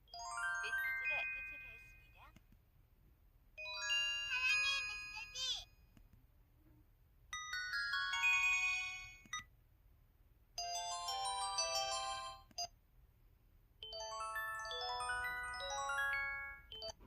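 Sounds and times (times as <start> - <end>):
phone alert jingles: 3.6 - 5.6.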